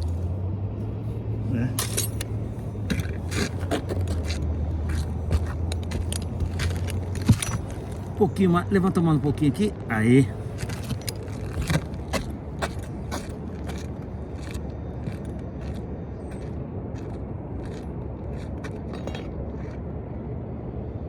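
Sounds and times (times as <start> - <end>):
low background rumble: 0.0 - 21.0
light clicks and clinks: 1.7 - 8.2.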